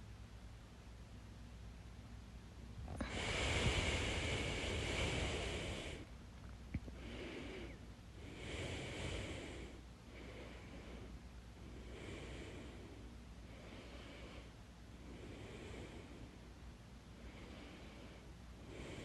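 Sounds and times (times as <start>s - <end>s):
person breathing noisily: 2.9s - 6.1s, 6.9s - 16.5s, 17.2s - 19.0s.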